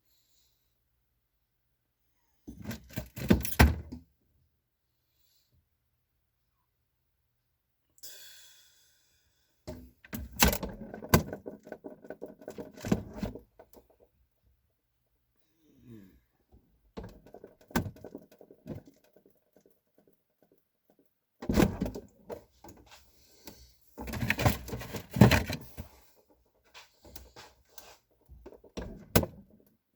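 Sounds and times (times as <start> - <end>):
objects being handled: 17.0 - 29.7.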